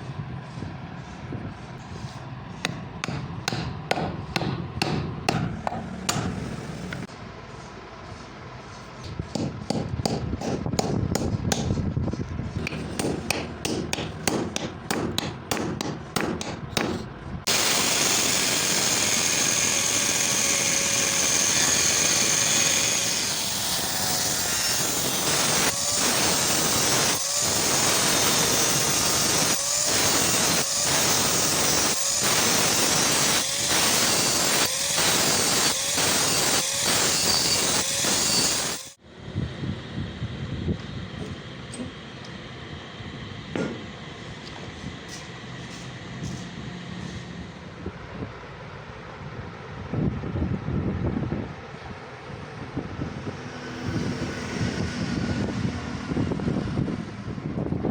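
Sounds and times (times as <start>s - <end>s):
power tool running: 12.6s - 39.0s.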